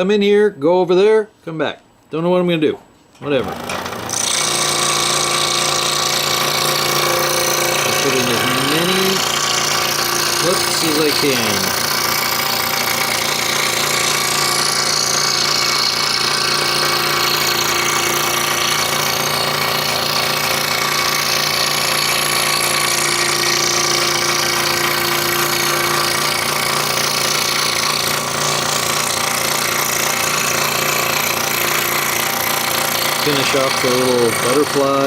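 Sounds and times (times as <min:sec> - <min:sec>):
scroll saw cutting wood: 0:03.3 - 0:35.0.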